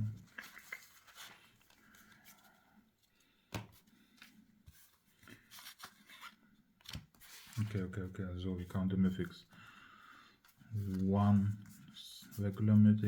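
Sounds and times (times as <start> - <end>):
trading cards rustling: 0.1 - 8.0, 10.5 - 13.0.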